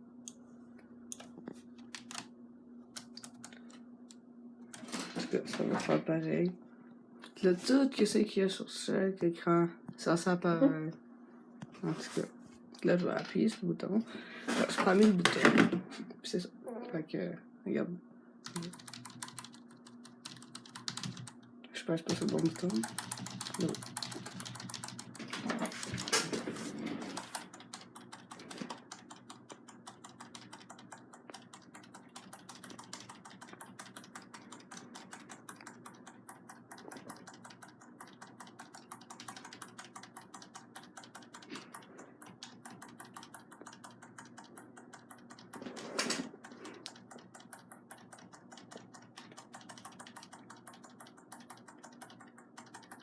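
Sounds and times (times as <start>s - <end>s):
computer keyboard keys tapping: 1.1s - 2.3s, 2.9s - 3.8s, 18.4s - 53.0s
keyboard clatter: 14.5s - 15.8s, 18.5s - 21.3s, 22.0s - 36.2s.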